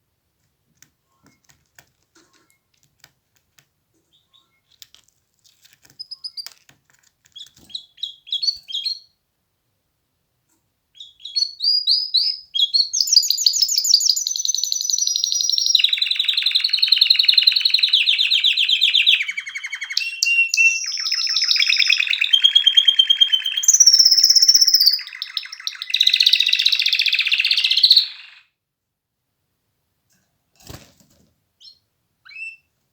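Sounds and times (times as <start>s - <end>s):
canary singing trills: 7.3s - 9.2s, 11.0s - 28.5s, 31.6s - 32.7s.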